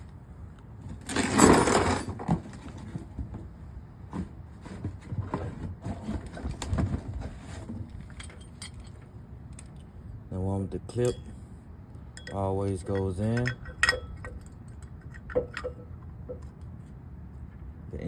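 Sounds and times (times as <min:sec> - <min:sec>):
loud scraping rustle: 0:00.8 - 0:03.2, 0:04.0 - 0:08.2
metal brake pads clinking: 0:12.1 - 0:16.5.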